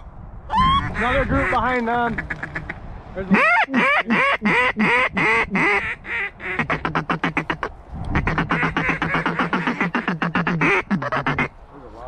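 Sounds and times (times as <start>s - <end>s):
goose call honks and clucks: 0.0s - 11.5s.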